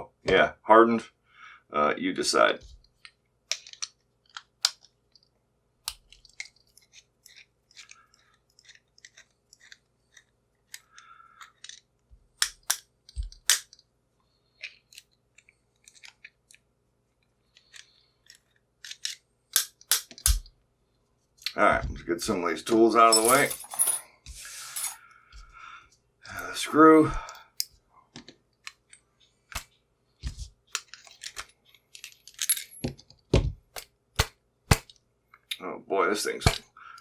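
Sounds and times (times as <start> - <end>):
metal tools clicking and tapping: 23.1 - 24.0, 32.3 - 32.9.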